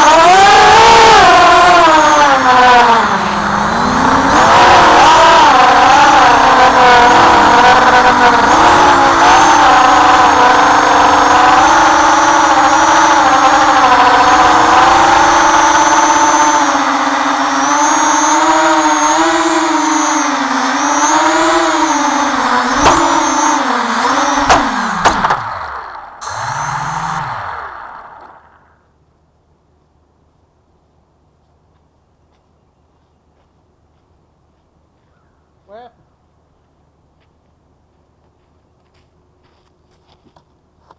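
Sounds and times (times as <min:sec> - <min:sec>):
drone motors whining: 0:00.0 - 0:28.8.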